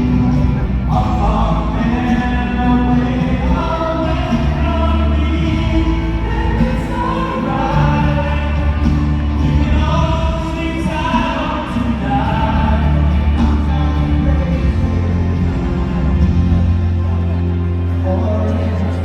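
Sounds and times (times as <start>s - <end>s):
band with heavy bass: 0.0s - 19.0s
voices singing long held notes: 0.0s - 19.0s.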